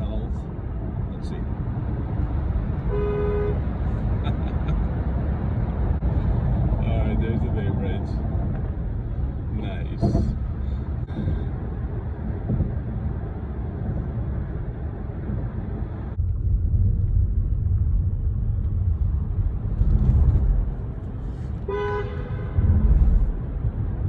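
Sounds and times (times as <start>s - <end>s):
car road rumble: 0.0s - 24.0s
car horn: 2.8s - 4.0s, 21.6s - 23.3s.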